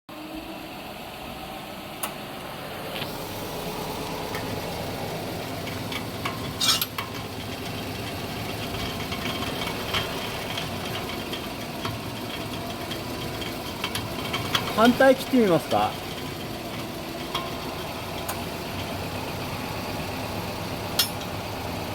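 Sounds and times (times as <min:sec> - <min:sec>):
car engine humming: 0:00.1 - 0:21.9.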